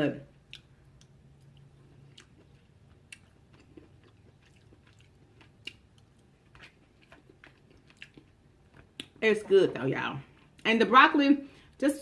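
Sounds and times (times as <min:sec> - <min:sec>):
person chewing food: 0:00.4 - 0:09.2.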